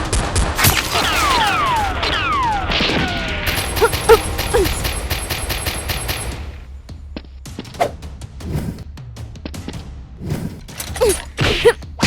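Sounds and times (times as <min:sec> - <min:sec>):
automatic gunfire: 0:03.6 - 0:06.5.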